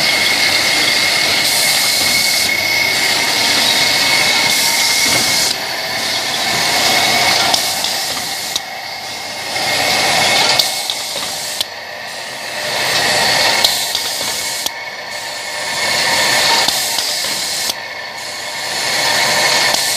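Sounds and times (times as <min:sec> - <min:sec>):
sharp machine clicks: 0:00.0 - 0:08.7, 0:12.8 - 0:14.8, 0:16.3 - 0:17.8
production machinery hiss: 0:00.0 - 0:19.9.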